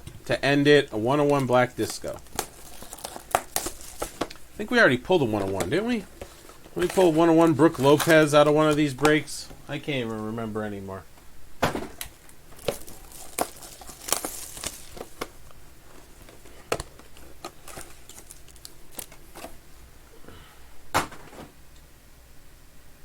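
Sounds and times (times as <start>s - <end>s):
plastic wrapper crinkling and tearing: 0.3s - 9.3s, 12.0s - 19.6s.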